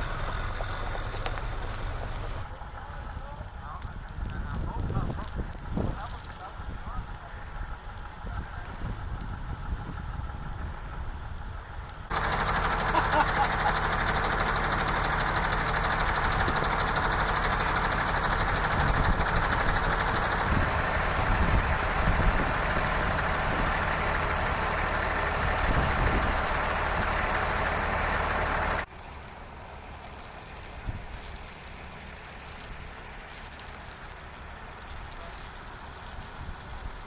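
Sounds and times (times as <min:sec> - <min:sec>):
road or wind noise: 0:00.0 - 0:37.0
vehicle engine running: 0:00.0 - 0:37.0.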